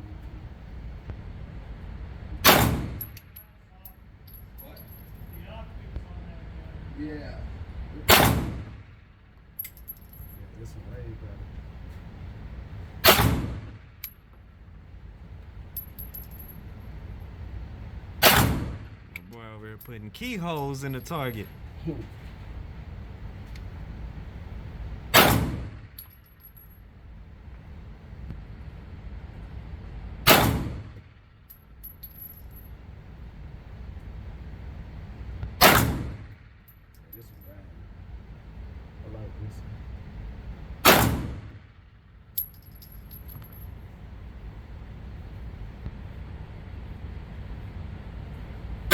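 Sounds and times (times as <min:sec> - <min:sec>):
steady low rumble: 0:00.0 - 0:48.9
pistol shot echoing: 0:02.4 - 0:03.0, 0:08.1 - 0:08.6, 0:13.0 - 0:13.7, 0:25.1 - 0:25.8, 0:30.3 - 0:30.8, 0:40.8 - 0:41.5
light metallic clinks: 0:03.0 - 0:05.6, 0:09.6 - 0:10.7, 0:15.7 - 0:17.0, 0:19.8 - 0:22.1, 0:26.0 - 0:26.8, 0:31.5 - 0:32.8, 0:36.7 - 0:37.6, 0:42.3 - 0:43.9
spent casings tinkling: 0:03.0 - 0:05.7, 0:09.6 - 0:10.8, 0:15.7 - 0:17.2, 0:19.3 - 0:22.0, 0:26.0 - 0:26.9, 0:31.5 - 0:32.8, 0:42.3 - 0:44.0
pistol shot echoing indoors: 0:08.1 - 0:08.5.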